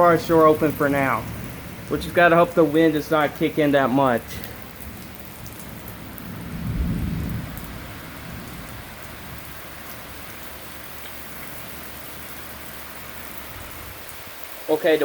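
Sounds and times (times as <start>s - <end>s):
heavy rain pouring: 0.0s - 15.0s
low rumble of thunder: 4.4s - 10.6s.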